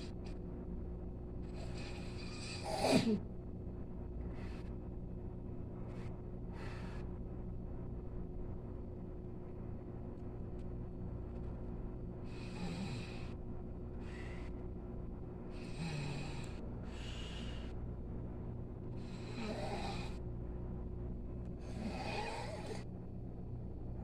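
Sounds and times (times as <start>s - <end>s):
person snoring: 12.3s - 13.3s, 15.5s - 17.5s, 19.0s - 20.2s, 21.6s - 22.8s.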